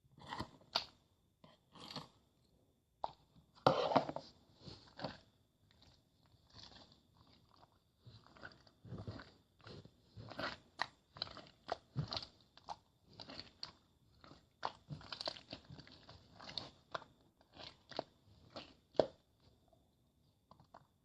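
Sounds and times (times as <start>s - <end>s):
crisp food crunching: 4.9s - 19.2s.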